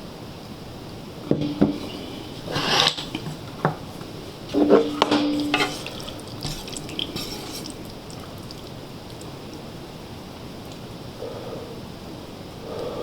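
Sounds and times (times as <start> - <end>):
cutlery scraping dishes: 1.3 - 3.8, 4.5 - 7.8
light taps of utensils: 1.3 - 9.3
cutlery clinking on dishes: 4.6 - 7.8.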